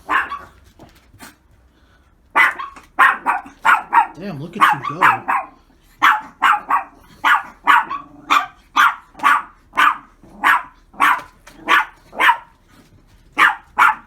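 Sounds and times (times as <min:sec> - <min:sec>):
dog barking: 0:00.0 - 0:00.6, 0:02.3 - 0:12.6, 0:13.3 - 0:14.0.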